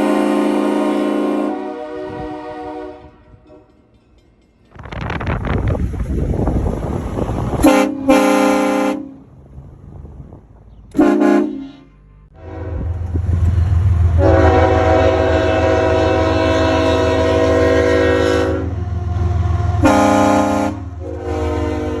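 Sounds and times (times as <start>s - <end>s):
air train horn blasts: 0.0s - 3.7s, 7.6s - 9.2s, 10.9s - 13.2s, 14.2s - 22.0s.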